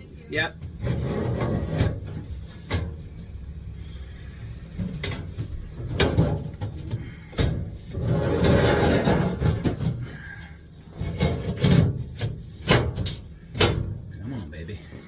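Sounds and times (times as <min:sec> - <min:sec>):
low steady rumble: 0:00.0 - 0:15.0
sheet metal scraping: 0:00.7 - 0:04.0, 0:04.6 - 0:14.0
sheet metal knocks and clunks: 0:04.8 - 0:10.1, 0:11.0 - 0:14.1.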